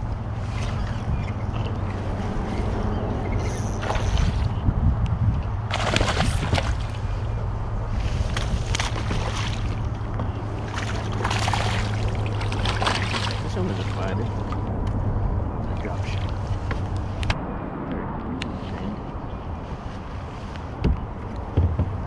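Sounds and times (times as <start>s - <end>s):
low hum: 0.0s - 22.0s
paddle splashing in water: 5.7s - 7.2s, 8.0s - 14.1s.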